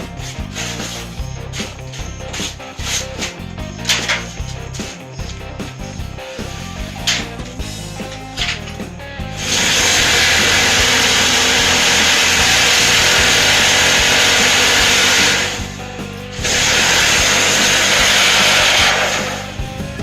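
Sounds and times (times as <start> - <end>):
block machine vibrator running: 0.0 - 20.0.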